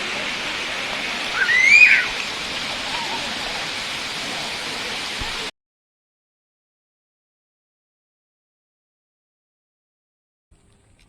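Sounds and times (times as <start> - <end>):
falling water rushing: 0.0 - 5.5
whistled call: 0.0 - 5.5.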